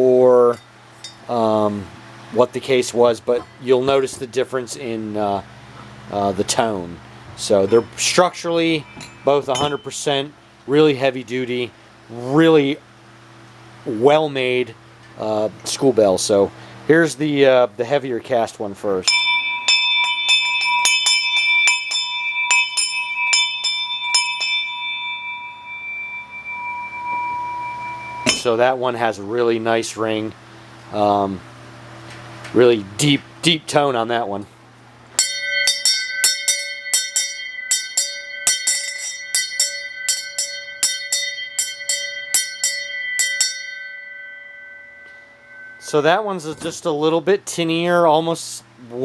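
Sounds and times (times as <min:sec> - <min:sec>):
brass bell ringing: 0:07.6 - 0:10.2, 0:19.0 - 0:29.0, 0:35.2 - 0:47.1.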